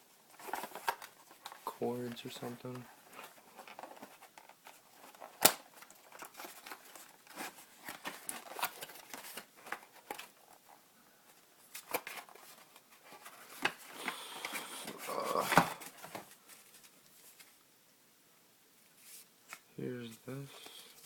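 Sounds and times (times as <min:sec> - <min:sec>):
packaging rustling and crinkling: 0:00.3 - 0:10.8, 0:11.6 - 0:17.6.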